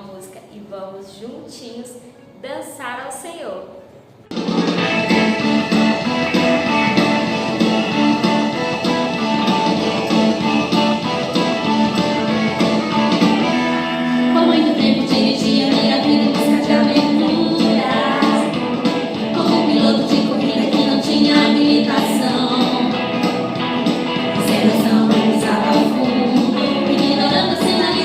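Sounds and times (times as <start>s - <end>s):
guitar accompaniment: 4.3s - 28.0s
children's worship song singing: 9.2s - 28.0s.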